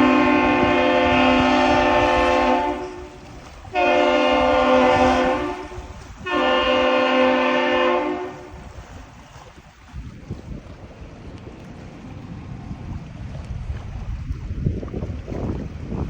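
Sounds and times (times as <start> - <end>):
deep horn blasts: 0.0 - 8.7.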